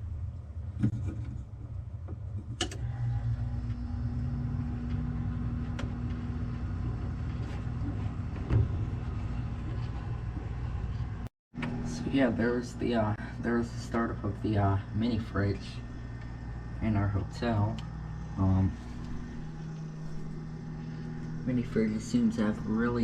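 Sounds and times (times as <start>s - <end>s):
fridge compressor humming: 0.0s - 23.0s.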